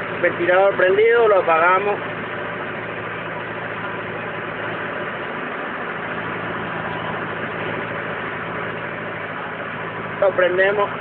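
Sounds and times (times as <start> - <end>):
vehicle engine running: 0.0 - 11.0.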